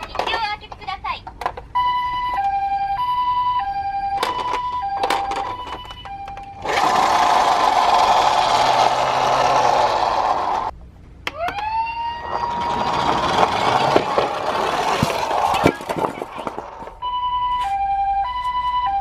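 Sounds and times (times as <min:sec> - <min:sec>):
harsh steady siren tone: 0:01.8 - 0:06.7, 0:11.3 - 0:14.2, 0:15.0 - 0:19.0
siren winding up: 0:01.8 - 0:10.7, 0:11.3 - 0:19.0.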